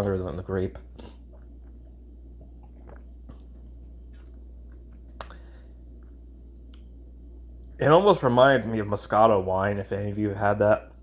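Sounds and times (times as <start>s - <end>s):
steady low hum: 0.0s - 11.0s
wet mouth clicks tasting drink: 5.1s - 6.9s.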